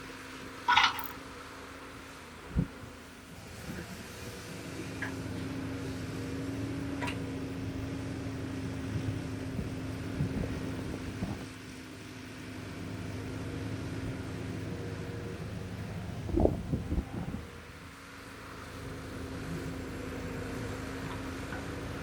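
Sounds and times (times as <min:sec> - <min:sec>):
excavator engine humming: 0:00.0 - 0:22.0.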